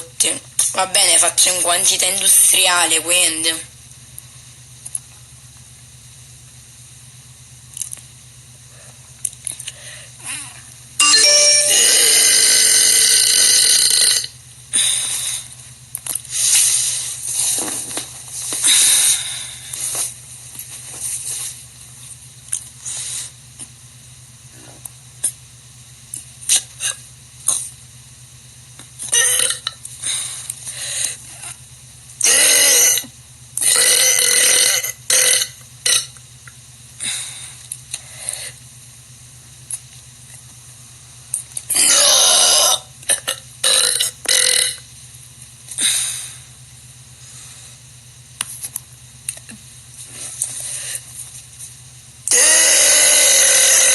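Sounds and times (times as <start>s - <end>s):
woman burping: 11.8s - 14.3s, 29.1s - 29.8s, 41.7s - 44.8s.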